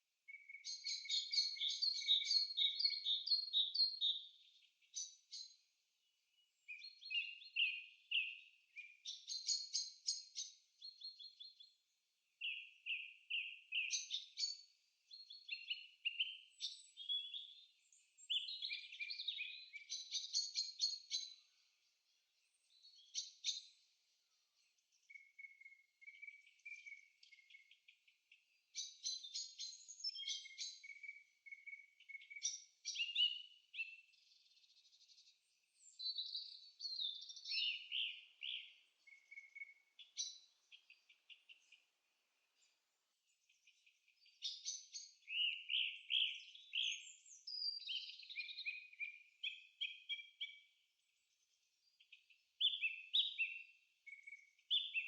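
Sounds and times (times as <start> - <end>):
birds chirping and trilling: 0.3 - 55.0.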